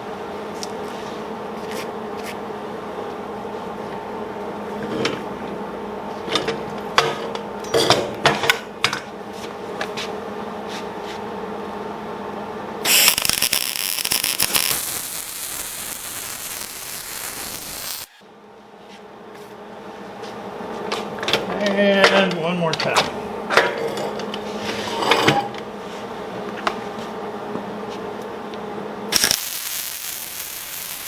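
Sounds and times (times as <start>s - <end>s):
steady hum: 0.0s - 31.0s
welding arc hissing: 12.8s - 18.2s, 29.1s - 31.0s.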